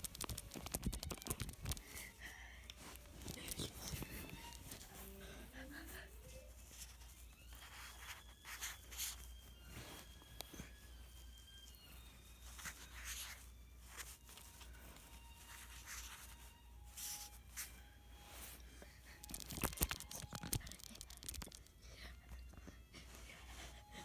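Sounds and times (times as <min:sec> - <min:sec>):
card pack wrapper tearing and crinkling: 0:00.0 - 0:02.0, 0:02.9 - 0:04.8, 0:19.2 - 0:21.7.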